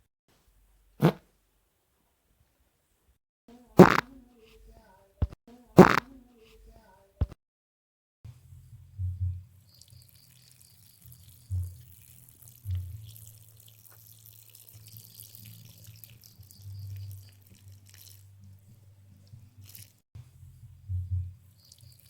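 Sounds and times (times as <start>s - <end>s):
wet spluttering farts: 1.0s - 1.2s, 3.8s - 4.1s, 5.8s - 6.1s, 11.1s - 18.3s
wet crackle and spatter: 9.8s - 20.0s.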